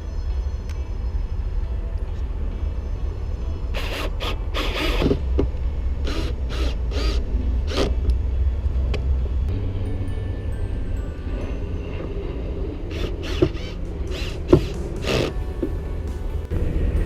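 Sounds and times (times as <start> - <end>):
steady low rumble: 0.0 - 17.0
seats scraping and creaking: 12.9 - 16.6.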